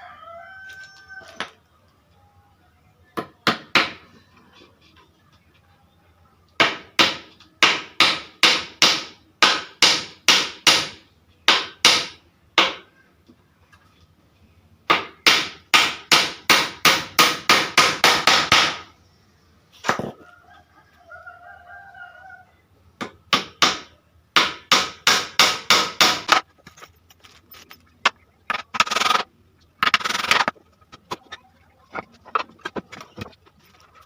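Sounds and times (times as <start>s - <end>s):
hammer striking wood: 3.2s - 4.0s, 6.6s - 12.9s, 14.9s - 18.9s, 23.0s - 26.4s.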